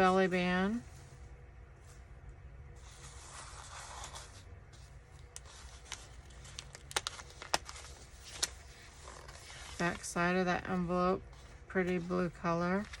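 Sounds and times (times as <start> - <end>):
paper rustling: 2.8 - 13.0.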